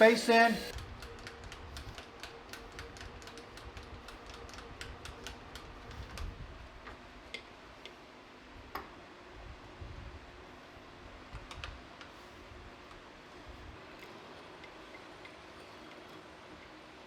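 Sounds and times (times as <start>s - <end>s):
faint steady hum: 0.0s - 17.0s
small metal clicks and taps: 0.7s - 6.3s.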